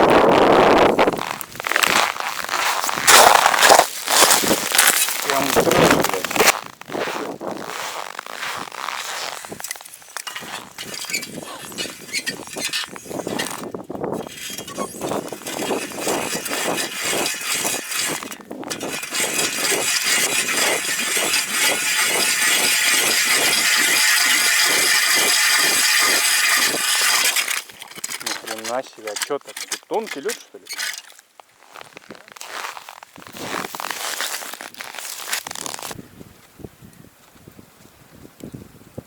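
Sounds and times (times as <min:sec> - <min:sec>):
ice scraping and chopping: 0:00.1 - 0:36.0
loud steady grinding: 0:09.5 - 0:31.2.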